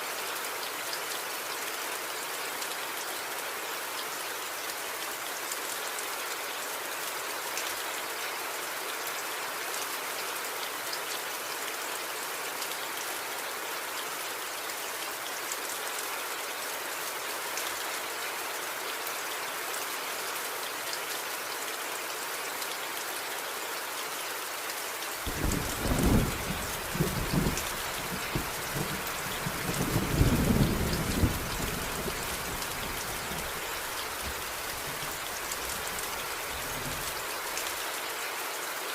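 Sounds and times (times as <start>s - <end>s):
heavy rain hissing: 25.2s - 38.1s
rolling thunder: 25.4s - 33.6s.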